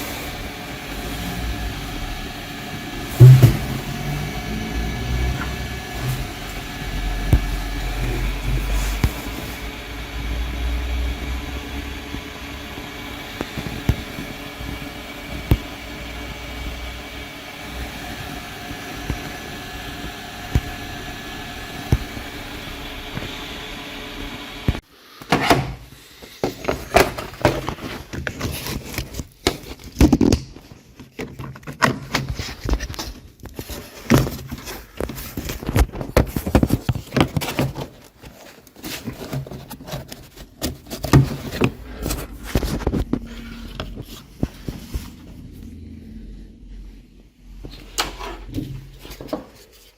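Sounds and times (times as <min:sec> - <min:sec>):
steady hum: 0:00.0 - 0:24.8, 0:41.2 - 0:49.4.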